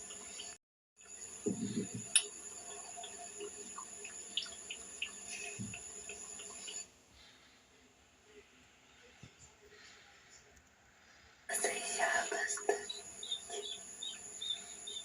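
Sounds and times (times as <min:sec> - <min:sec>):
water dripping: 0:00.0 - 0:06.9
water running and splashing: 0:01.2 - 0:06.8.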